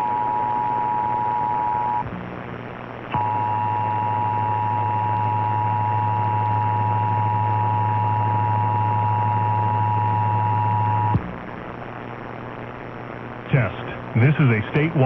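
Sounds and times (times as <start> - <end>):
low hum: 0.0 - 14.3
two-tone alarm signal: 3.2 - 11.1.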